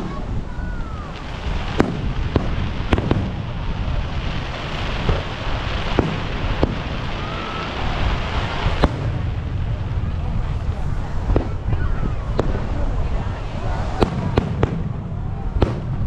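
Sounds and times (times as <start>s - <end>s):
fireworks bangs: 0.0s - 16.0s
low rush of noise: 0.0s - 16.0s.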